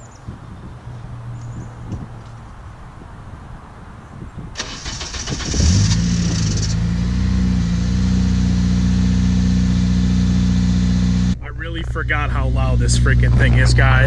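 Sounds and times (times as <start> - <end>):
engine starter cranking: 4.6 - 6.8.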